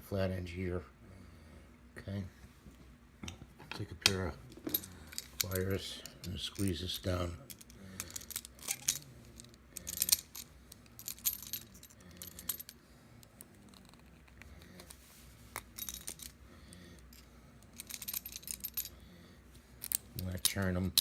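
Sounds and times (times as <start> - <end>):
pliers clinking against wire: 4.6 - 12.7, 17.0 - 18.9.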